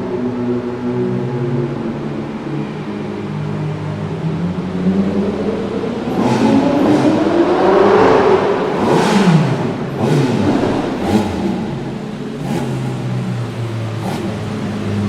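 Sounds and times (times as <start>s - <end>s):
sports car engine accelerating: 0.0s - 15.0s
sharp exhaust cracks: 8.4s - 15.0s.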